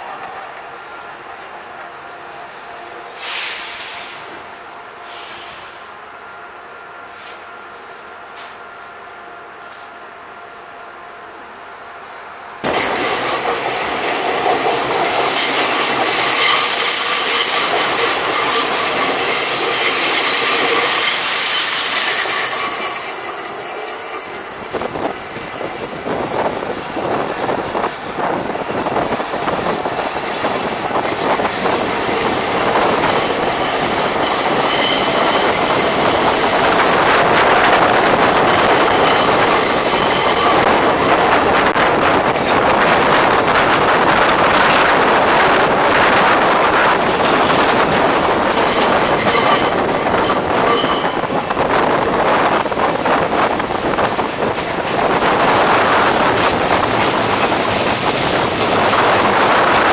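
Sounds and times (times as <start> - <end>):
electric train running on rails: 0.0 - 59.9
high-pitched wheel squeals: 4.1 - 6.4, 15.3 - 23.5, 29.0 - 37.9, 38.6 - 41.6, 48.6 - 51.3.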